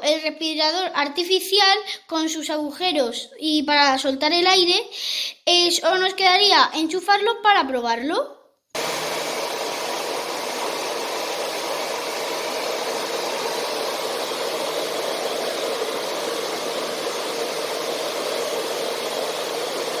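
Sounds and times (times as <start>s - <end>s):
hair dryer running: 8.8s - 20.0s.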